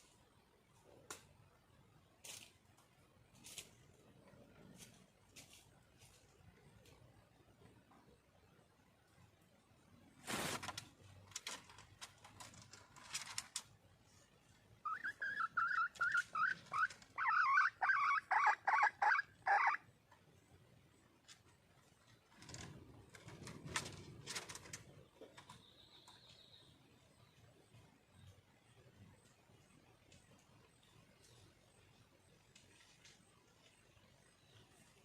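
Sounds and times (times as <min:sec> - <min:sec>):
rustling: 0:10.1 - 0:14.4
junglefowl hen clucking: 0:14.8 - 0:19.9.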